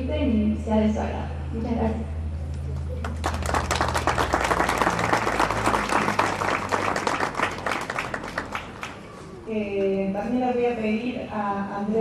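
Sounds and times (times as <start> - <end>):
audience applauding: 3.0 - 9.2.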